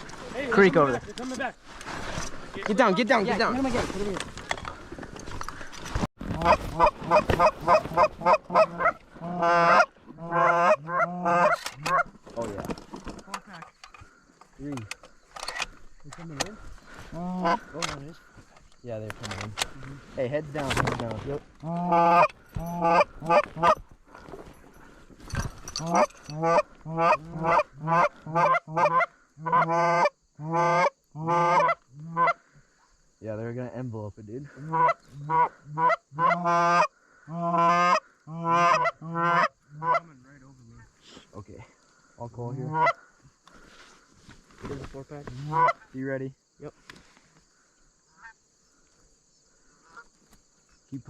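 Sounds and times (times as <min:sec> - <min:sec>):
goose honking: 0:06.4 - 0:12.1, 0:17.1 - 0:17.8, 0:21.6 - 0:23.8, 0:25.8 - 0:32.4, 0:34.6 - 0:40.2, 0:42.6 - 0:43.0, 0:45.4 - 0:45.9.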